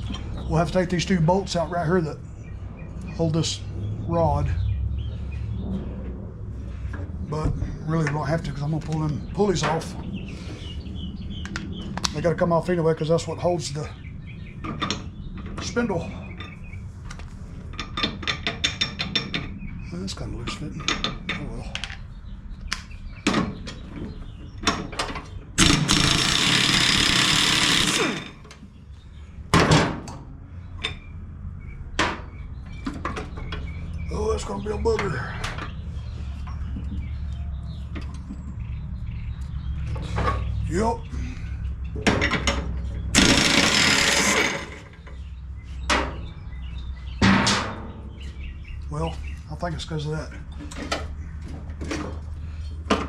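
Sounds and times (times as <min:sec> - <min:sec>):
sharp metal knocks: 0:17.8 - 0:19.6, 0:47.1 - 0:48.1
power tool burst winding down: 0:25.6 - 0:28.4, 0:43.2 - 0:44.8.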